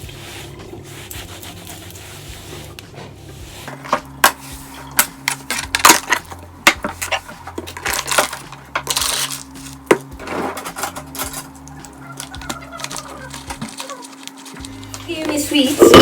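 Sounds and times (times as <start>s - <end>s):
rough scraping noise: 0.0s - 14.6s
dishes and utensils clinking: 3.7s - 16.0s.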